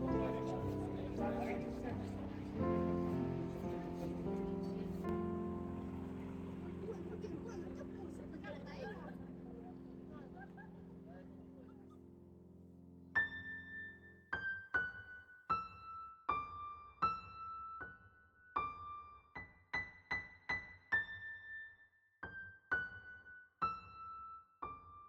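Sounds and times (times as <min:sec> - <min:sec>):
slow gentle solo piano melody: 0:00.0 - 0:19.2.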